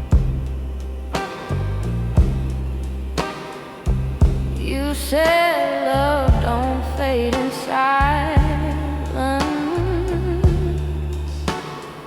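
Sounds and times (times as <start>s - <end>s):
slow blues with bass and drums: 0.0s - 12.0s
person singing with vibrato: 4.6s - 12.0s.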